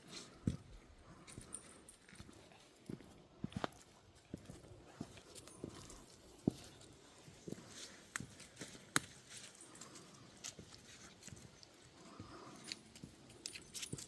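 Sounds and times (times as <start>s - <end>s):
footsteps and dog paw clicks: 7.5s - 14.0s.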